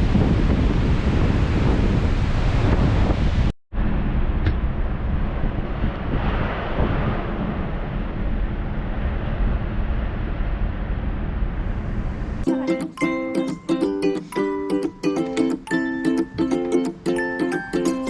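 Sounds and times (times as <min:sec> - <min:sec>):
wind blowing on microphone: 0:00.0 - 0:10.8.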